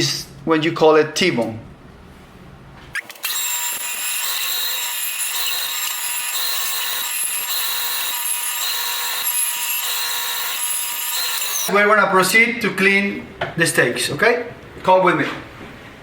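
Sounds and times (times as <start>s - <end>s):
band saw cutting meat and bone: 3.0s - 11.7s.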